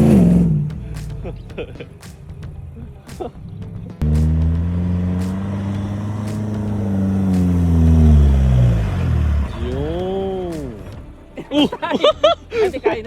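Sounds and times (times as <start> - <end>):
vehicle engine under load: 3.5 - 11.1.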